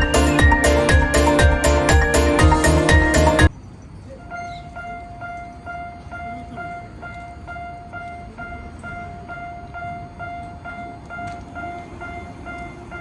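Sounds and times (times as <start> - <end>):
level crossing bell ringing: 0.0 - 3.5.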